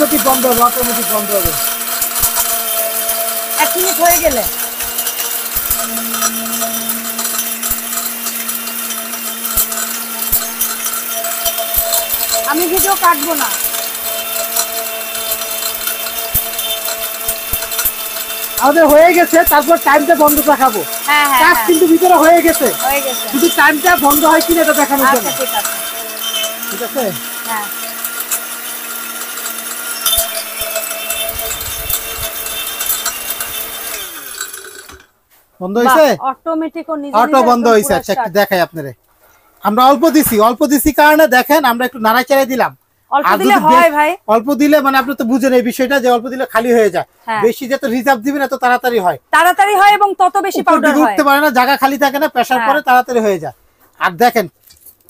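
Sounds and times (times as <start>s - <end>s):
electric spice grinder running: 0.0s - 35.1s, 43.3s - 44.0s.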